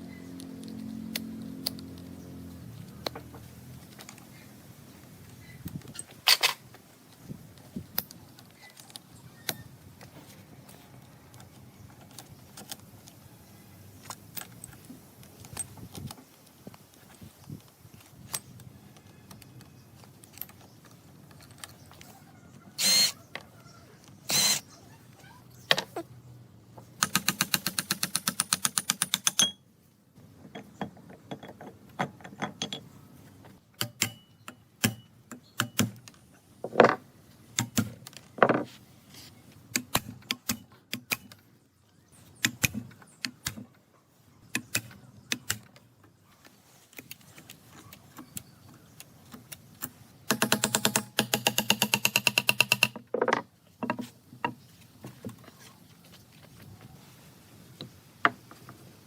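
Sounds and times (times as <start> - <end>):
rapid even clicking of hand tool: 27.0 - 29.5, 49.3 - 53.2
scattered clicks and knocks: 49.3 - 55.4.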